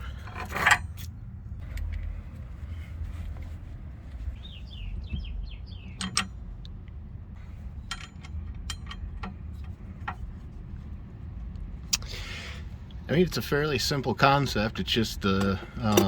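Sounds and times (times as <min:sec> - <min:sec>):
steady low rumble: 0:00.0 - 0:16.0
bird chirping: 0:04.2 - 0:06.4.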